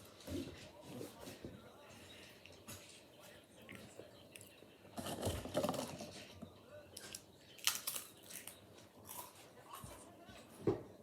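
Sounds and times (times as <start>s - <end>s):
crisps crunching: 7.6s - 9.8s.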